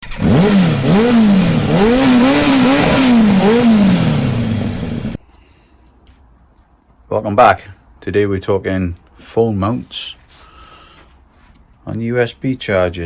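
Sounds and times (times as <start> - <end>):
motorcycle engine revving: 0.0 - 5.2.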